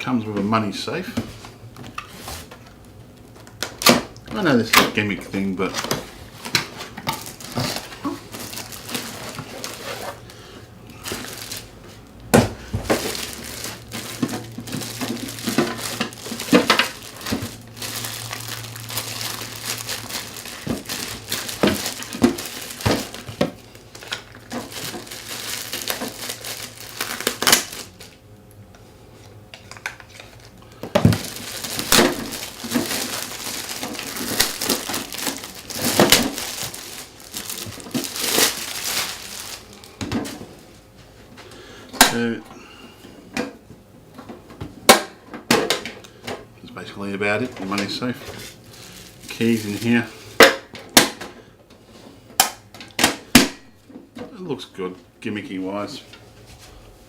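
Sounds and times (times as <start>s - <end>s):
plastic packaging crinkling: 1.3s - 28.2s, 29.5s - 41.0s, 46.8s - 51.2s.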